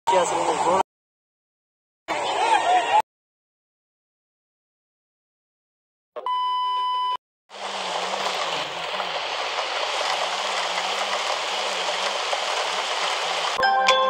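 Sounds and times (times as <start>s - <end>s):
electronic beep: 6.2s - 7.2s
heavy rain falling: 7.5s - 13.6s.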